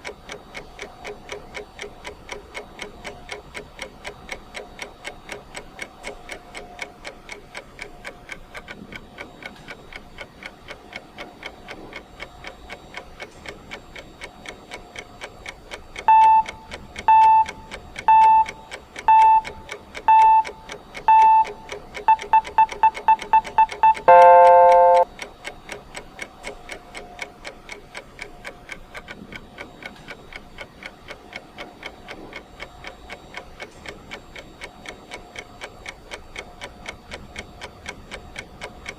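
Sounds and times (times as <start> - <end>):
clock ticking: 0.0 - 38.9
timer beeps: 16.0 - 25.1
chord-like alarm tone: 23.6 - 25.0.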